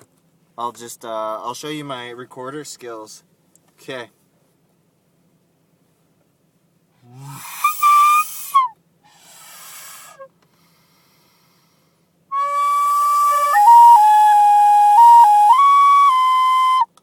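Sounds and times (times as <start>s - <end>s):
soft puff of breath: 7.1s - 12.1s
breathy recorder notes: 12.3s - 17.0s.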